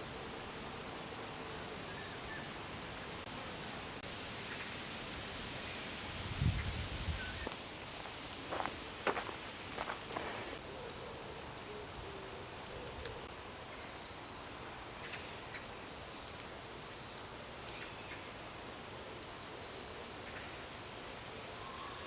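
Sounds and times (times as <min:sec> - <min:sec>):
wind hiss: 0:00.0 - 0:10.8
small rustles and clicks: 0:12.2 - 0:13.4.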